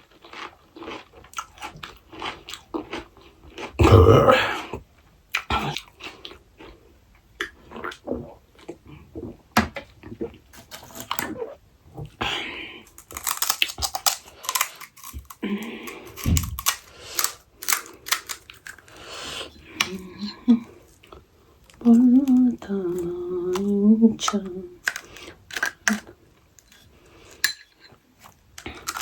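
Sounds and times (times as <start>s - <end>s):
crunchy chewing: 0.0s - 3.8s, 10.2s - 22.0s, 28.2s - 29.0s.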